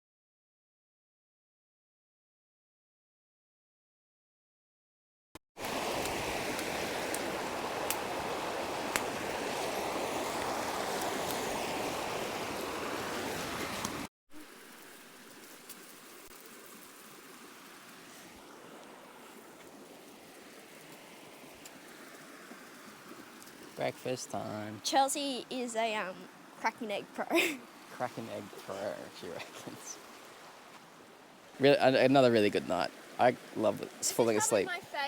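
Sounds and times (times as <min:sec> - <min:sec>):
river water rushing over rocks: 0:05.6 - 0:23.8, 0:27.4 - 0:35.0.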